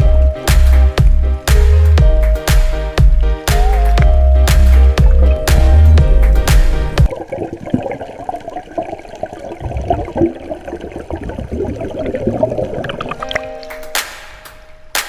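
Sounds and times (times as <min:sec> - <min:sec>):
music with heavy bass beat: 0:00.0 - 0:07.1.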